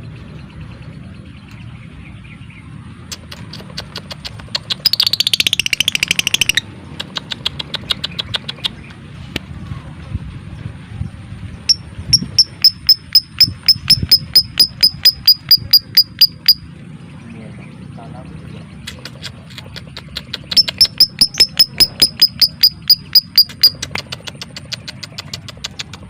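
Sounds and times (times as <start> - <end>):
lovebird clicking chirps: 3.1 - 9.0, 11.7 - 16.6, 18.9 - 26.0.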